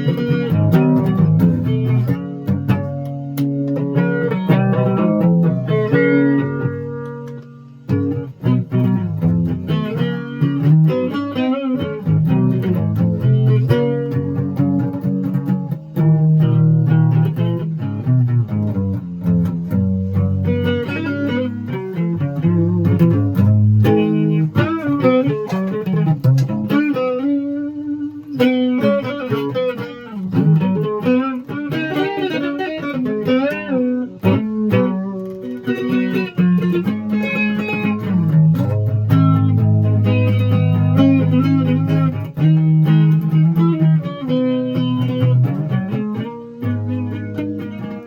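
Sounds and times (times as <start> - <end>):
guitar music: 0.0 - 48.0.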